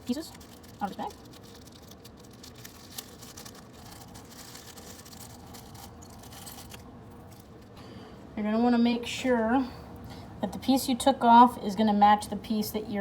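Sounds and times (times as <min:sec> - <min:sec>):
plastic bag rustling: 0:00.0 - 0:07.8.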